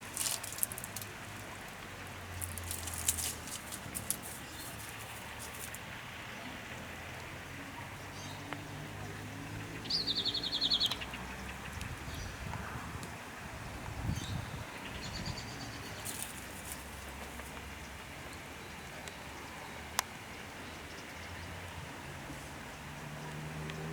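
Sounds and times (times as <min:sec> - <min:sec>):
light rustling and crackling: 0:00.0 - 0:06.2, 0:15.9 - 0:19.2.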